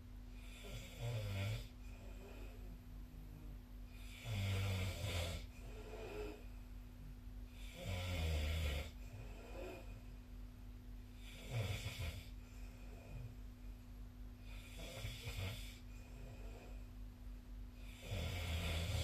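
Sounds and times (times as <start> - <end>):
person snoring: 0.4 - 2.8, 3.9 - 6.4, 7.6 - 10.0, 11.2 - 13.3, 14.4 - 16.8, 17.8 - 19.0.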